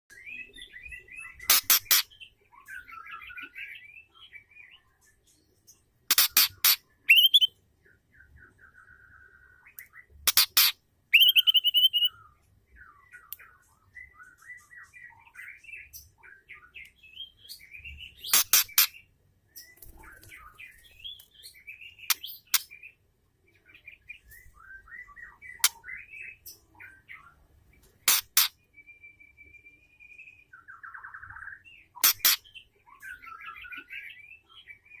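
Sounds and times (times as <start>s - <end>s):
bird chattering and twittering: 0.1s - 28.8s, 30.4s - 35.0s
bird sharp calls: 0.4s - 3.8s, 6.1s - 7.5s, 9.8s - 12.3s, 17.4s - 22.9s, 30.7s - 35.0s.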